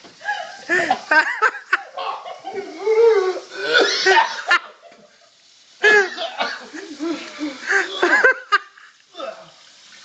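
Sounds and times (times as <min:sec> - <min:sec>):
person coughing: 0:03.6 - 0:04.6, 0:05.8 - 0:08.4
person laughing: 0:05.8 - 0:08.9.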